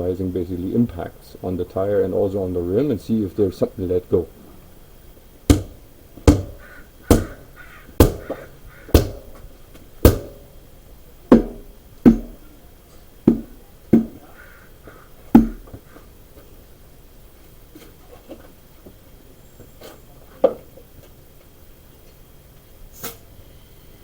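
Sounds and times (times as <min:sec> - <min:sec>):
hammer blows on tire rim: 0:05.5 - 0:09.4, 0:10.0 - 0:10.6.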